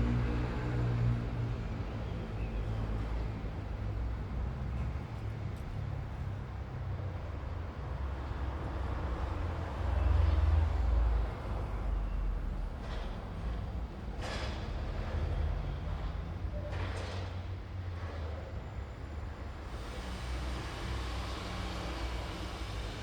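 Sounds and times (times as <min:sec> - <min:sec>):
traffic engines rumbling: 0:00.0 - 0:23.0.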